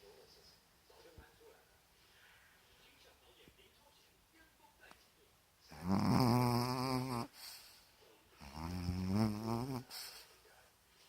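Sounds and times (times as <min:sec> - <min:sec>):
person snoring: 0:05.7 - 0:07.3, 0:08.4 - 0:09.9.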